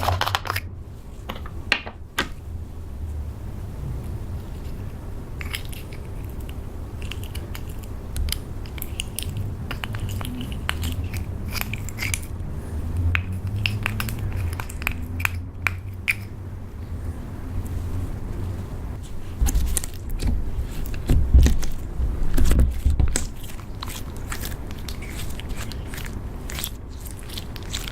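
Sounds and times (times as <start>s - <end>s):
low rumble: 0.7s - 7.1s, 8.0s - 23.2s
slime squished by hand: 19.2s - 27.9s.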